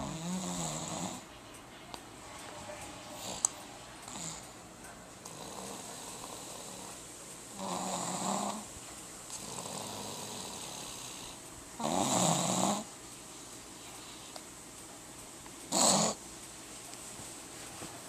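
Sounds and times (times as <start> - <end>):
loud snoring: 0.0 - 1.2, 4.1 - 4.5, 5.2 - 8.7, 9.3 - 12.9, 15.7 - 16.2
soft breathing: 13.3 - 14.5.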